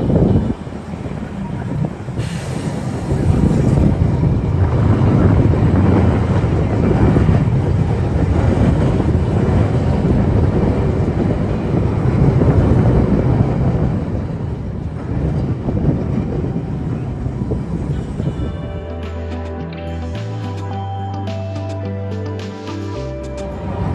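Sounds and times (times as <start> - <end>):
tram wheels rumbling on rails: 0.0 - 19.4, 23.3 - 23.9.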